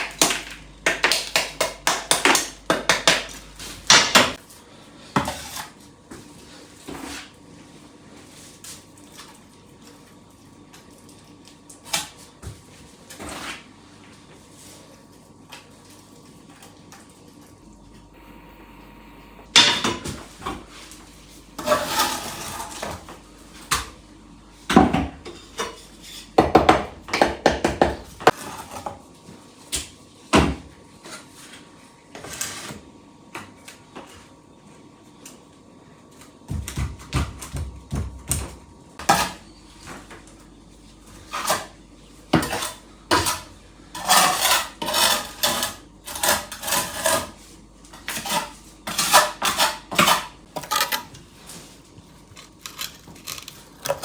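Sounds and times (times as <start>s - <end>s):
crockery scraping: 20.4s - 23.2s.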